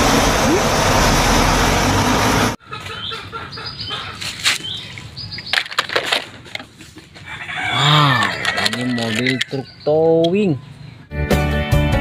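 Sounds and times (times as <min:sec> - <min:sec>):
birds chirping: 0:02.6 - 0:06.8, 0:07.4 - 0:11.2.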